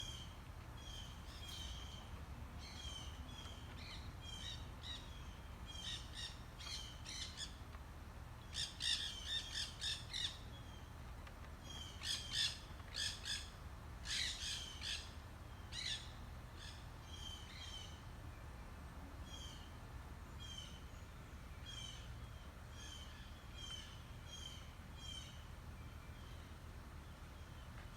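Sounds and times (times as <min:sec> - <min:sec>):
birds chirping: 0:00.0 - 0:07.7.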